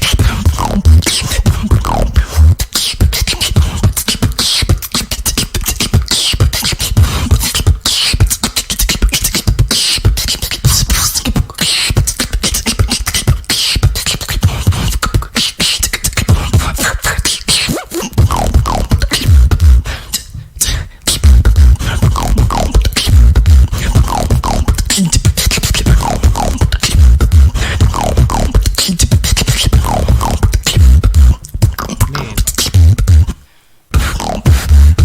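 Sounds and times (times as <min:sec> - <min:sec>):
woman beatboxing: 0:00.0 - 0:35.0.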